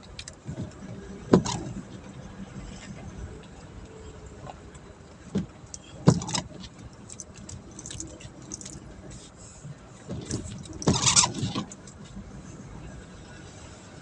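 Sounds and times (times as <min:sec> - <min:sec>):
vehicle rumbling: 0:00.0 - 0:14.0
rattling clatter: 0:10.1 - 0:12.1.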